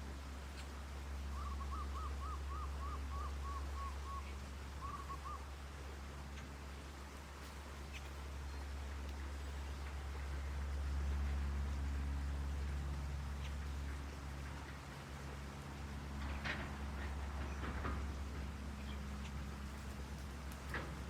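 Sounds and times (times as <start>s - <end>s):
steady low rumble: 0.0s - 21.0s
bird calling: 0.5s - 5.6s, 7.7s - 8.8s.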